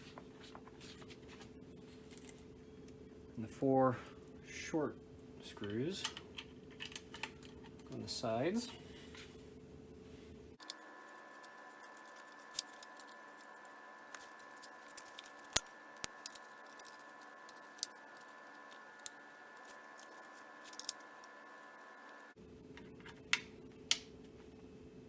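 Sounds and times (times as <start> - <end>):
faint hum: 0.0 - 25.0
screwdriver clicking on plastic: 10.6 - 21.4.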